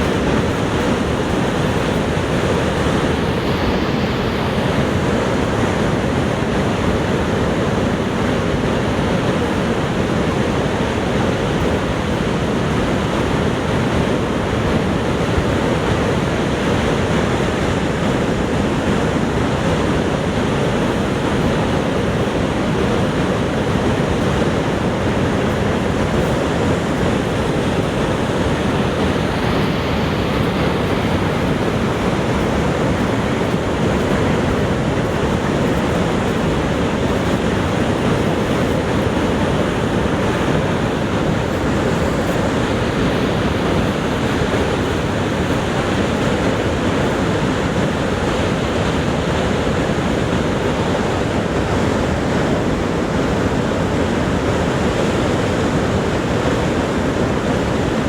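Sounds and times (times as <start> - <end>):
waterfall rushing: 18.0 - 50.8.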